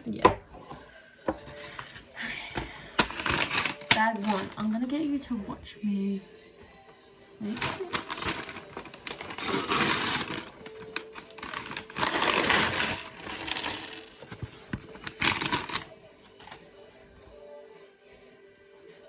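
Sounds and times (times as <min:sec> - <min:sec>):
plastic bag rustling: 0:02.9 - 0:05.0, 0:07.4 - 0:15.9
plastic bricks clattering: 0:11.3 - 0:14.2.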